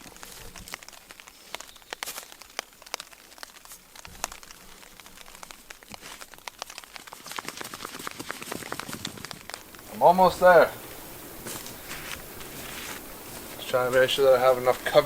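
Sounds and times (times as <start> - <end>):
sharp clicks and crackles: 0.0 - 10.6
tarp crinkling and rustling: 0.0 - 15.0.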